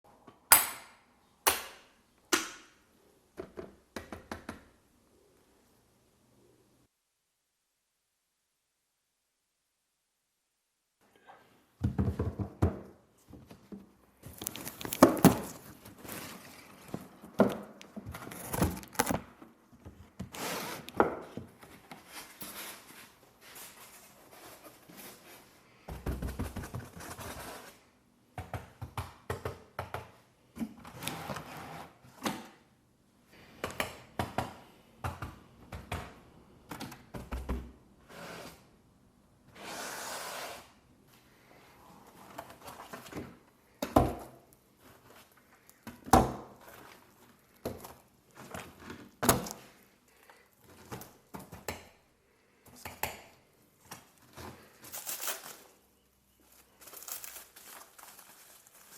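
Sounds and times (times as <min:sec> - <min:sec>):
packaging rustling: 0:14.2 - 0:19.3, 0:54.0 - 0:58.9.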